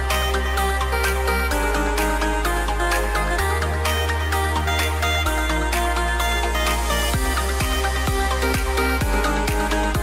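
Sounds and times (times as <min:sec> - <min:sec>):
electronic dance music: 0:00.0 - 0:10.0
kick drum hits: 0:07.2 - 0:10.0.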